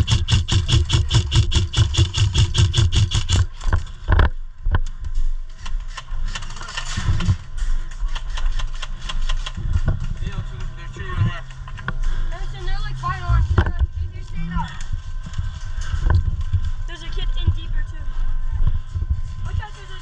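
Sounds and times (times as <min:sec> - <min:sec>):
electric rifle full-auto firing: 0:00.0 - 0:03.6
gear rattling and scraping: 0:00.0 - 0:04.4.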